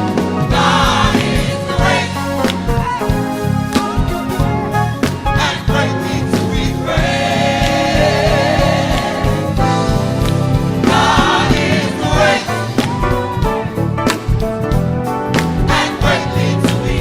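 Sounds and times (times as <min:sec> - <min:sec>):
gospel choir singing: 0:00.0 - 0:13.8, 0:15.5 - 0:17.0
band accompaniment: 0:00.0 - 0:17.0
drum hits: 0:05.1 - 0:17.0.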